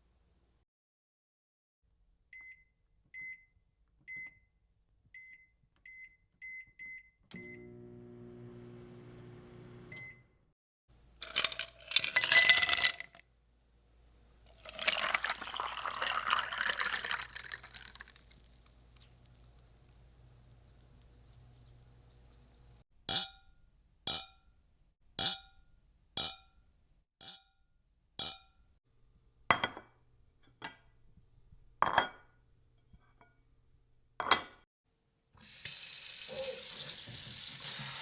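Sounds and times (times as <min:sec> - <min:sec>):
appliance humming: 0:07.4 - 0:10.3
liquid being poured: 0:14.5 - 0:22.8.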